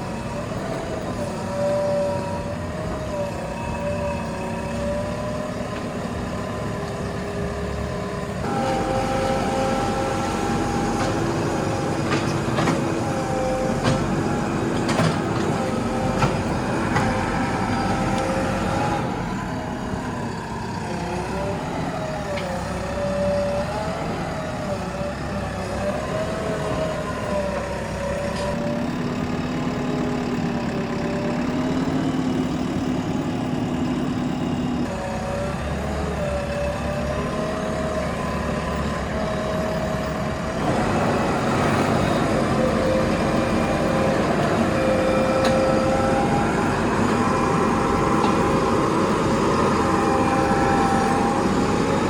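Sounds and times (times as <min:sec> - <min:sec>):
diesel engine running under load: 0:00.0 - 0:52.0
knocks and clunks: 0:13.7 - 0:17.4.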